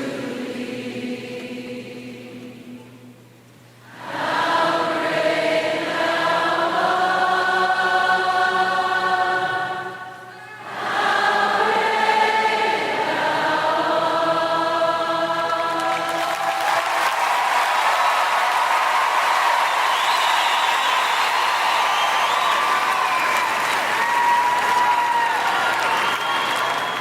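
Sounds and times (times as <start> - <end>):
choir singing a hymn: 0.0 - 3.2, 3.8 - 16.5.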